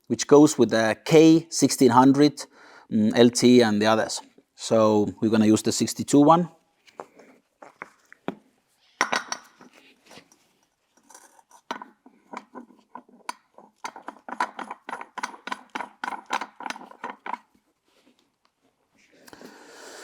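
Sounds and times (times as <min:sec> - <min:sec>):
metal parts knocking: 0:11.7 - 0:17.4.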